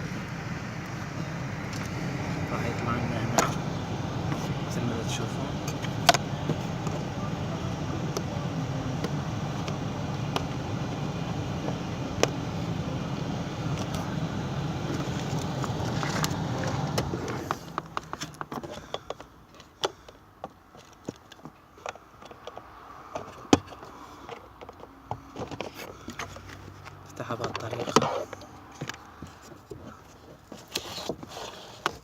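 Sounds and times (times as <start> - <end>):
car hum: 0.0 - 21.0.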